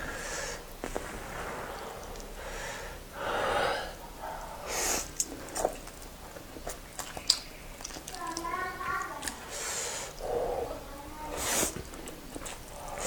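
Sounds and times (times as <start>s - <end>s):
sharp hissing intake of breath: 0.0s - 5.1s, 9.5s - 10.7s, 11.4s - 11.8s
breaths: 0.0s - 5.2s, 9.4s - 11.9s
person slurping noodles: 11.3s - 13.0s.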